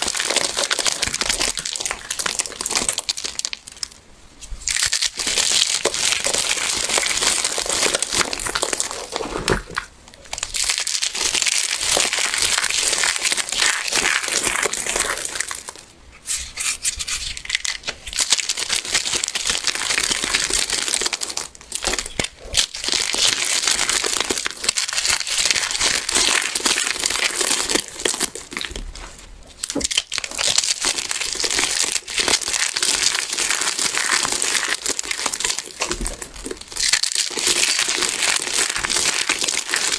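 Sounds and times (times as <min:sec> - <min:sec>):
dried soap crunching by hand: 0:00.0 - 0:04.0, 0:04.6 - 0:15.9, 0:16.7 - 0:39.9.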